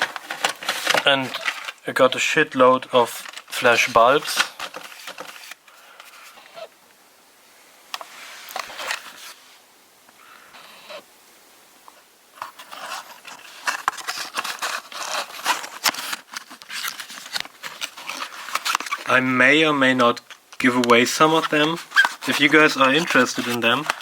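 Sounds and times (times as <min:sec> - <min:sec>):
hands rummaging through a box: 0:00.0 - 0:01.8, 0:03.0 - 0:06.6, 0:12.4 - 0:24.0.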